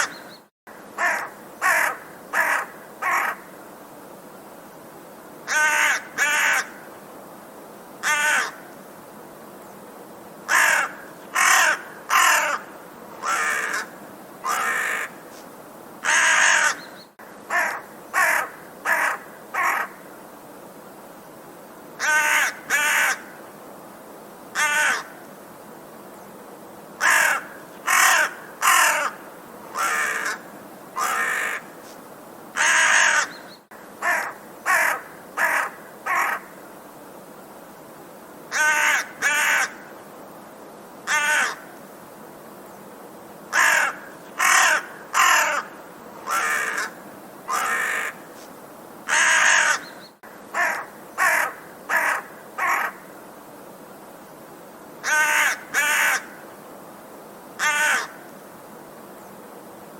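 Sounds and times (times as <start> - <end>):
faint steady hiss: 0.0 - 59.9
crow cawing: 1.0 - 3.5, 5.5 - 6.8, 8.0 - 8.6, 10.5 - 15.2, 16.0 - 16.9, 17.5 - 20.0, 22.0 - 23.4, 24.5 - 25.2, 27.0 - 31.8, 32.6 - 33.4, 34.0 - 36.6, 38.5 - 39.9, 41.0 - 41.7, 43.5 - 48.3, 49.1 - 53.1, 55.0 - 56.4, 57.6 - 58.2.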